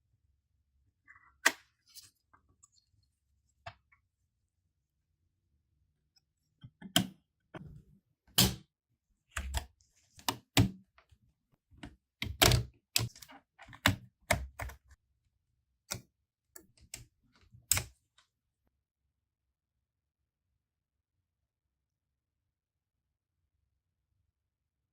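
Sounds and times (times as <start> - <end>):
plastic clicks and knocks: 11.8 - 14.8.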